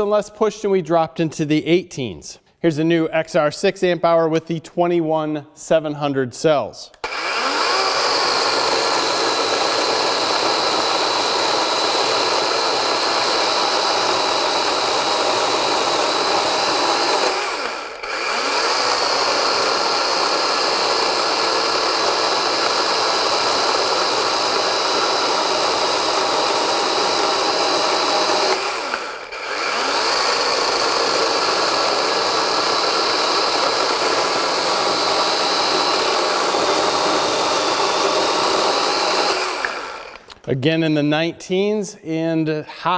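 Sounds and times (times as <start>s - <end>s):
chainsaw cutting wood: 7.0s - 40.4s.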